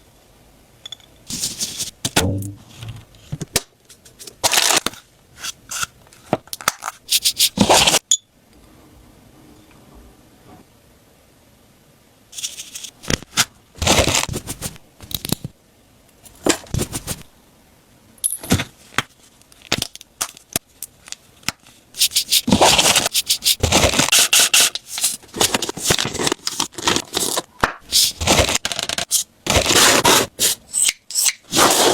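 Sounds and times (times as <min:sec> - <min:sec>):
scrapes and sharp clicks: 0:22.0 - 0:26.0
tissue paper rustling and crinkling: 0:22.0 - 0:27.4.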